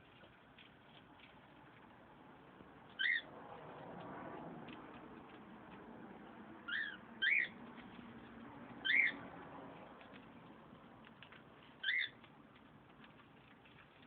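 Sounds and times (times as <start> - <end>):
lovebird chirping: 2.9 - 3.3, 6.7 - 7.6, 8.8 - 9.2, 11.8 - 12.2.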